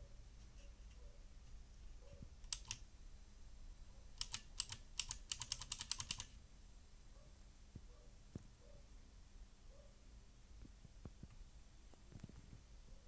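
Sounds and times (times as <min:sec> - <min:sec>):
clicky mechanical keyboard keystrokes: 0:02.5 - 0:02.8, 0:04.2 - 0:06.3.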